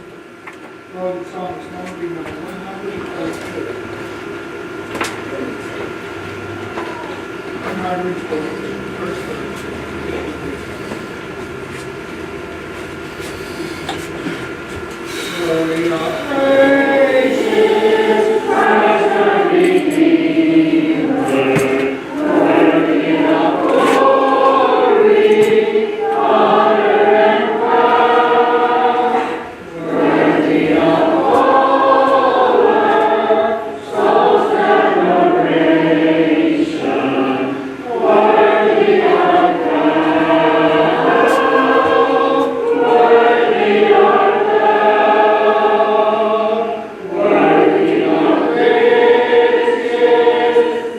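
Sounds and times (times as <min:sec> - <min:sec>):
congregation singing a hymn: 0:14.0 - 0:50.9.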